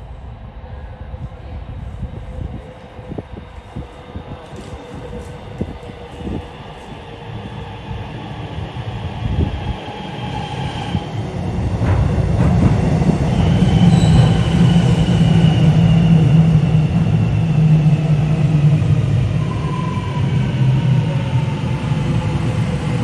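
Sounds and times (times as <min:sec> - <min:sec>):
train approaching: 0:00.0 - 0:23.0
wheel squeal: 0:13.6 - 0:15.6.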